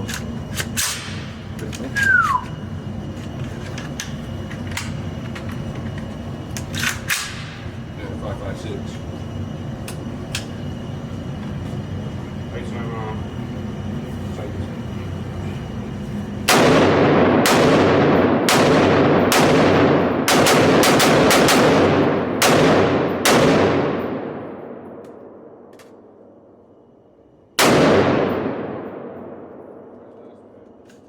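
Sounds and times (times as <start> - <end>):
echoing gunshots: 16.5 - 25.7, 27.6 - 30.0.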